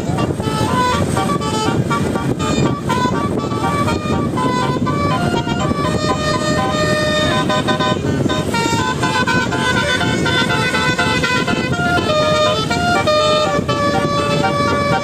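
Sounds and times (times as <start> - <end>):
multi-tone bus horn tune: 0.0 - 15.0
steady low rumble: 0.0 - 15.0.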